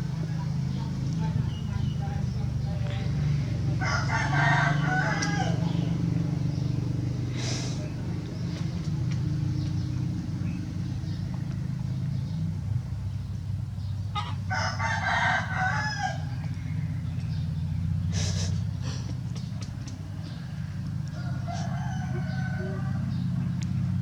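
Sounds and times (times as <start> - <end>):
rooster crowing: 3.7 - 5.9, 14.2 - 16.4, 21.0 - 23.3.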